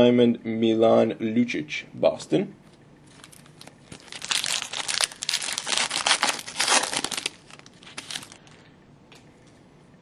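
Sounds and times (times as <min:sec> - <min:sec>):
wrapper crinkling: 0:03.1 - 0:08.5.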